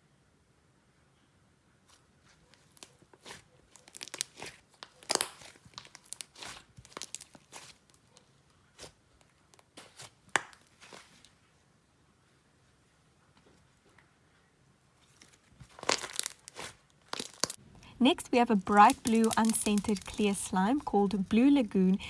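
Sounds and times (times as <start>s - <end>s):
slime squished by hand: 2.5s - 8.1s, 15.2s - 21.3s.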